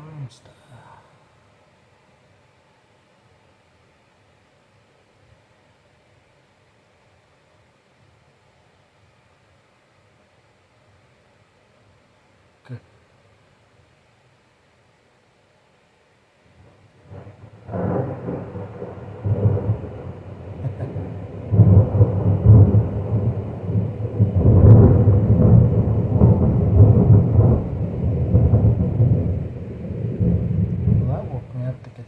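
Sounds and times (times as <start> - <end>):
thunder rumbling: 17.0 - 32.0.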